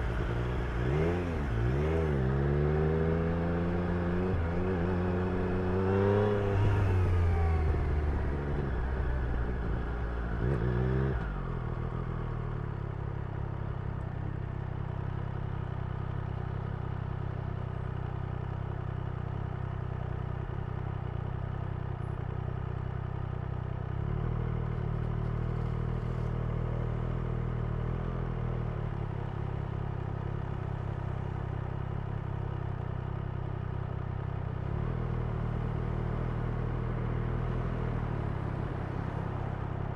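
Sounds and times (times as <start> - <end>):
motorcycle engine revving: 0.0 - 12.2.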